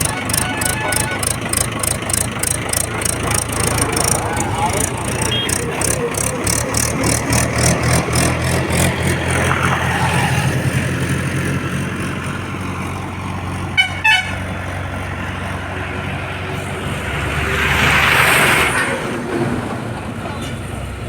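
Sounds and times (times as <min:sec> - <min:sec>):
horn toots: 0:00.0 - 0:06.7, 0:13.8 - 0:14.6
heavy diesel engine running: 0:00.0 - 0:21.0.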